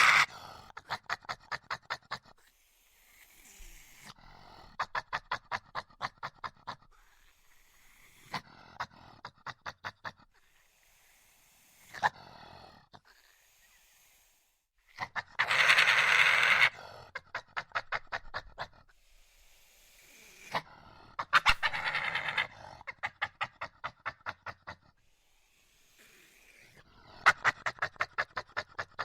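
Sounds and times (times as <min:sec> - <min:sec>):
badger chattering: 0:21.2 - 0:24.8, 0:27.2 - 0:29.0.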